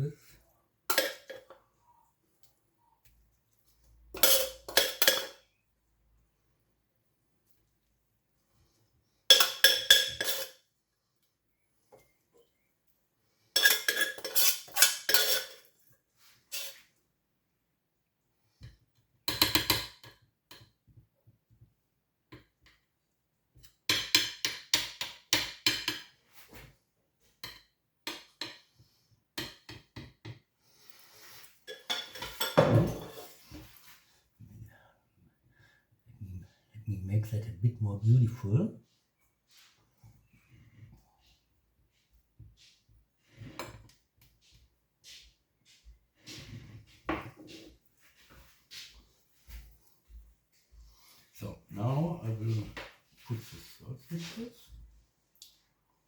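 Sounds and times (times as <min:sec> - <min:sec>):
utensils clinking against plates: 0:00.9 - 0:01.6, 0:04.2 - 0:05.4, 0:09.3 - 0:10.6, 0:13.6 - 0:15.8, 0:31.6 - 0:33.4.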